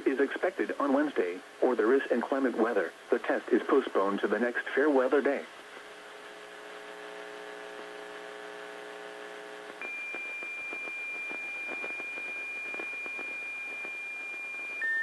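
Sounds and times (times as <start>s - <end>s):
radio buzzing hum: 0.0s - 15.0s
faint crackle: 5.4s - 15.0s
continuous high-pitched tone: 9.7s - 15.0s.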